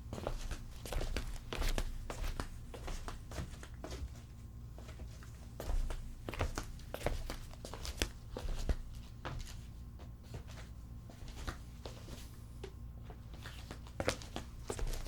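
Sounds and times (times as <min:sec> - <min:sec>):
footsteps in sandals: 0:00.1 - 0:15.0.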